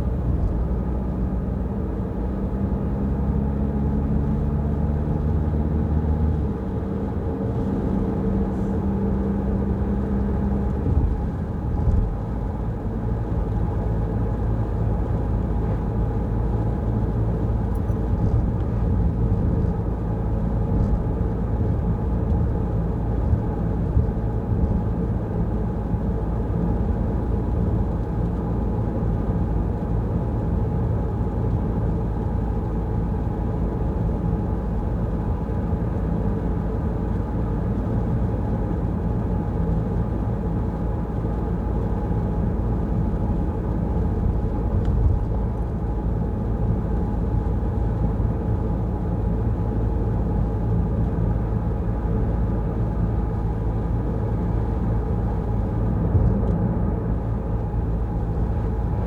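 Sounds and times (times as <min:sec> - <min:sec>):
car engine drone: 0:00.0 - 0:59.0.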